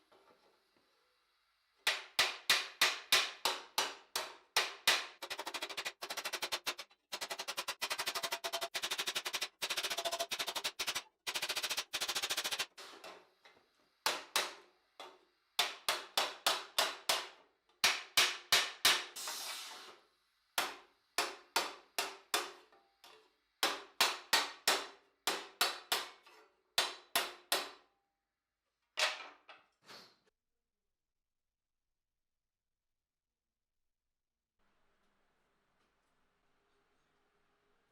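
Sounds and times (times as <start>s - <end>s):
hammer striking sheet steel: 15.6s - 19.4s.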